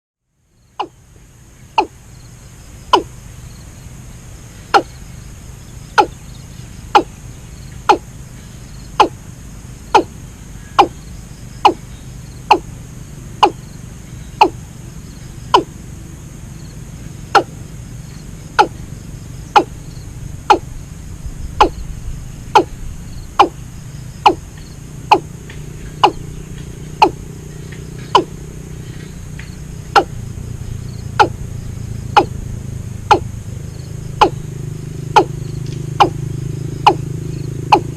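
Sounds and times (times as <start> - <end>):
low hum: 0.9 - 37.9.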